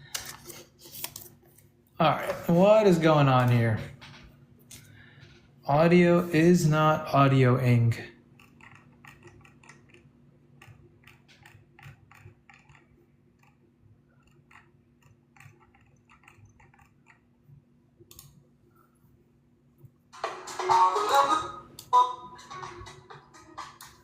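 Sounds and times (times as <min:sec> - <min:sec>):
steady low hum: 0:00.0 - 0:24.0
loud music: 0:20.2 - 0:24.0.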